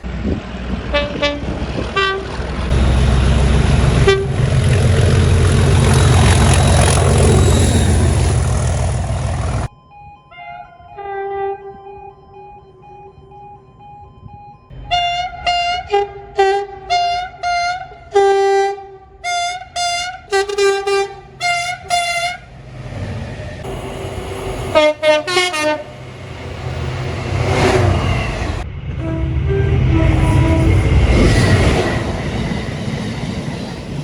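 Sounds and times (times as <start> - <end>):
train rumble: 0.0 - 9.7, 19.2 - 34.0
train horn blasts: 0.9 - 9.1, 10.4 - 12.1, 14.7 - 22.6, 23.6 - 32.4.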